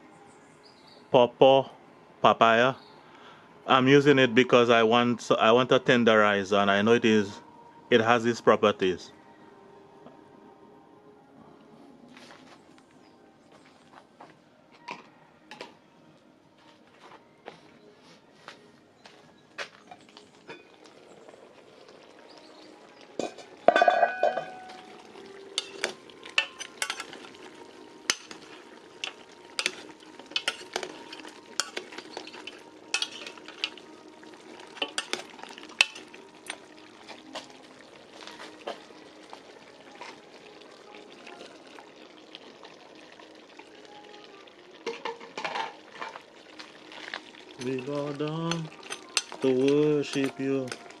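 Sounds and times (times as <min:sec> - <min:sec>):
meat sizzling in a pot: 0:20.0 - 0:51.0
ringing metal clang: 0:23.2 - 0:24.7.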